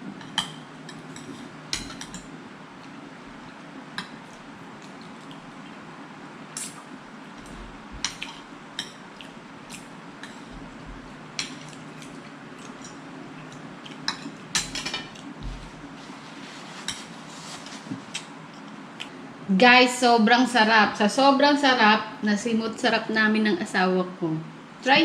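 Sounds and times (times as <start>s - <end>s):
low steady hum: 0.0s - 25.0s
cutlery clinking on plates: 14.0s - 15.6s.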